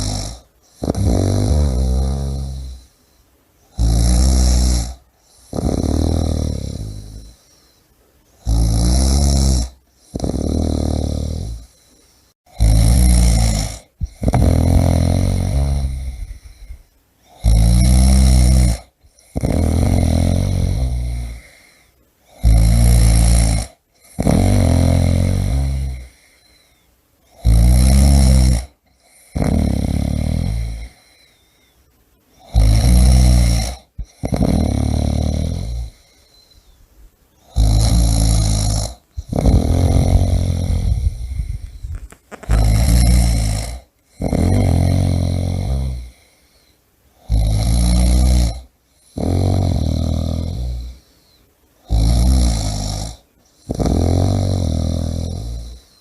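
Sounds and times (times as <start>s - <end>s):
person snoring: 0.0s - 3.0s, 3.7s - 7.8s, 8.4s - 31.5s, 32.4s - 36.8s, 37.4s - 56.0s
soft breathing out: 16.0s - 16.9s, 40.0s - 43.0s.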